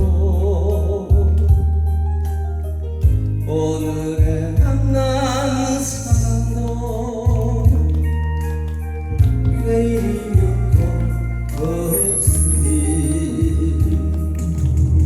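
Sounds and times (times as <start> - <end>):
backing track with bass and keyboard: 0.0 - 15.0
person singing with vibrato: 3.4 - 15.0.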